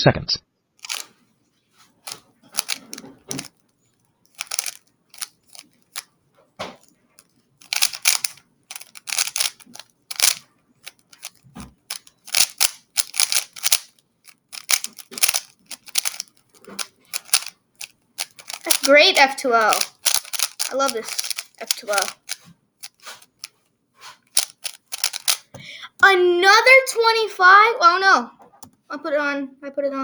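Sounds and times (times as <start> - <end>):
puzzle cube clacking: 0.8 - 1.2, 2.0 - 3.6, 4.3 - 6.1, 7.2 - 23.6, 24.2 - 25.6.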